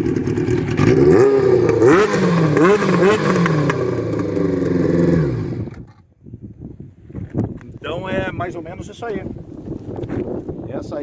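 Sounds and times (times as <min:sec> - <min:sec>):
motorcycle engine revving: 0:00.0 - 0:06.0.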